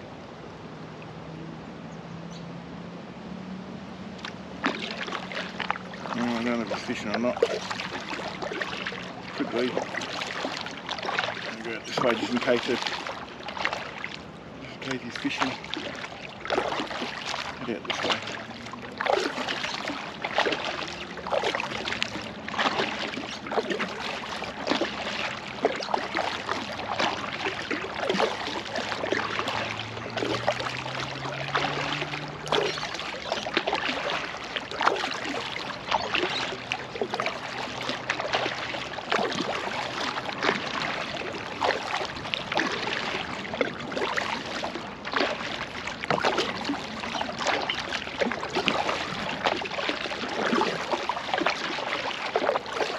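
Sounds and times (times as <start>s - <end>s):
oars dipping and splashing: 0.8s - 52.9s
water lapping against hull: 0.9s - 52.9s.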